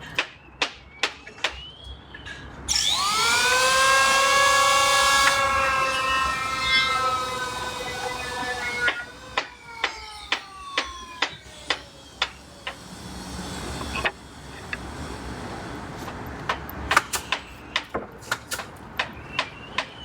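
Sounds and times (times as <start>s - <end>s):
downward gliding tone: 2.9s - 14.1s.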